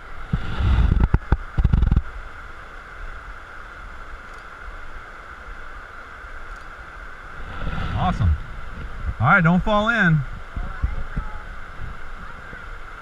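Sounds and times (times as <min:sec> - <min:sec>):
creek water rushing: 0:00.0 - 0:13.0
rumbling thumps on microphone: 0:07.6 - 0:09.2.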